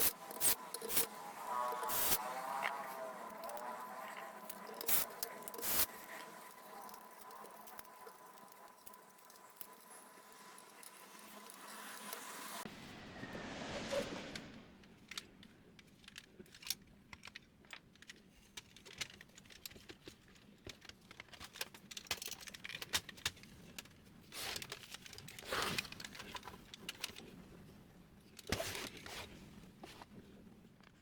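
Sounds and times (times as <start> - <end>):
small parts clicking and clinking: 0.0 - 12.2, 15.8 - 27.3.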